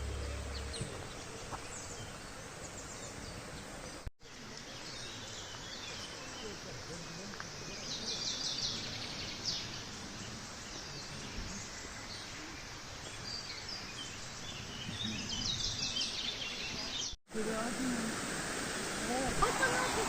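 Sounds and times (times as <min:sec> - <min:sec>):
songbirds chirping: 0:00.0 - 0:17.7
outdoor rushing hiss: 0:17.3 - 0:20.0.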